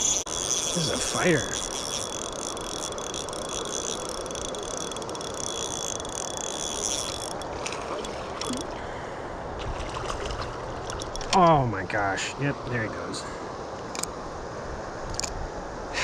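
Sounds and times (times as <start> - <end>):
high-pitched whir: 0.0 - 7.4
river water flowing: 0.0 - 16.0
faint clicks: 13.8 - 14.1.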